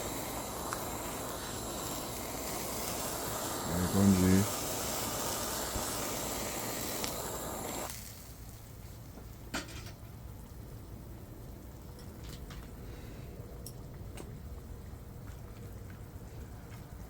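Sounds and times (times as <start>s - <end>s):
camp burner hissing: 0.0s - 17.0s.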